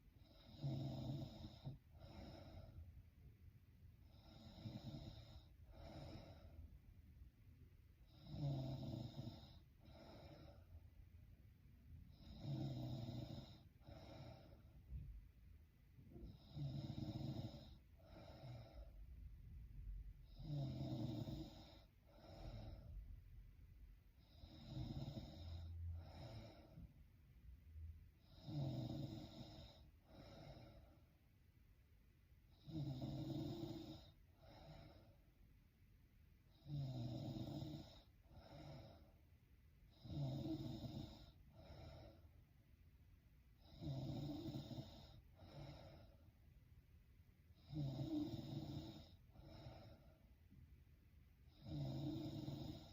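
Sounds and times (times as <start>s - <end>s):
woman snoring: 0.2s - 2.8s, 4.0s - 6.6s, 8.1s - 10.8s, 12.1s - 14.7s, 16.1s - 19.0s, 20.2s - 22.9s, 24.2s - 26.9s, 28.2s - 31.0s, 32.5s - 35.2s, 36.5s - 39.1s, 39.9s - 42.3s, 43.6s - 46.3s, 47.5s - 50.2s, 51.5s - 52.9s.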